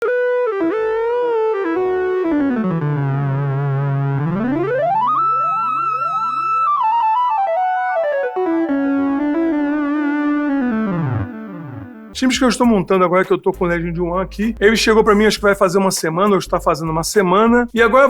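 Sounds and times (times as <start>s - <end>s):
synthesizer lead with pitch glides: 0.0s - 12.2s.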